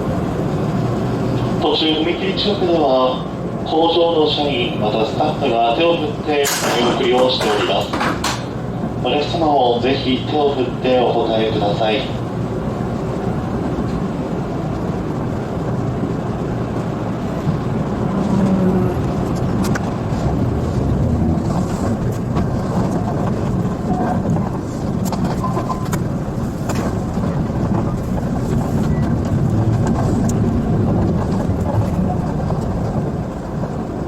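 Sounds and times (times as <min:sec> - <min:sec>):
train rumbling on the track: 0:00.0 - 0:34.0
clicks and knocks: 0:06.4 - 0:08.6.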